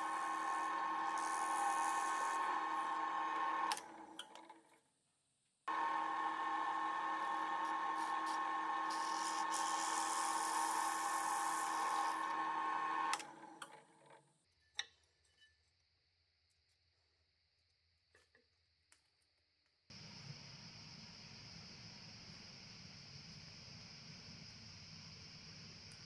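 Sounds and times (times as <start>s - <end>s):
power tool motor whining: 0.0s - 4.0s, 5.7s - 13.4s.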